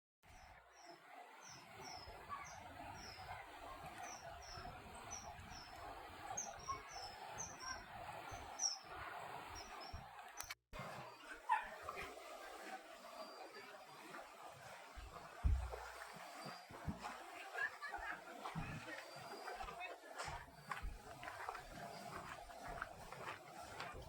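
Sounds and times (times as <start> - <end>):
small bird chirping: 0.3 - 8.9.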